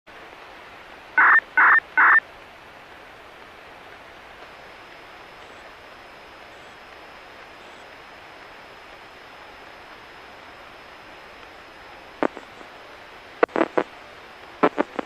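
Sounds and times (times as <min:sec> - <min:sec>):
radio static hiss: 0:01.0 - 0:15.0
short electronic beeps: 0:01.2 - 0:02.2.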